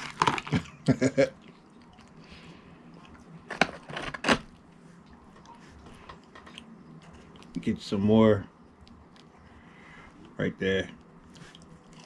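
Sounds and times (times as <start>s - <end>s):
crisp crackles of fries: 0.0s - 7.7s, 11.2s - 12.0s.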